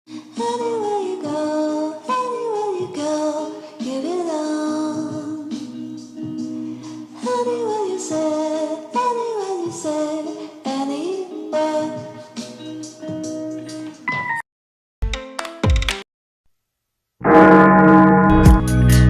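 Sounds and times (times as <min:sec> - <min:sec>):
music with singing voice: 0:00.1 - 0:14.1, 0:18.3 - 0:19.0.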